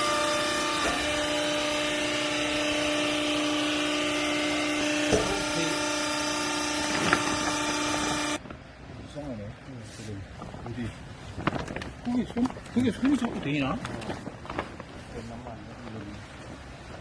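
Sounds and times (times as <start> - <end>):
hydraulic motor and pump humming: 0.0 - 9.3.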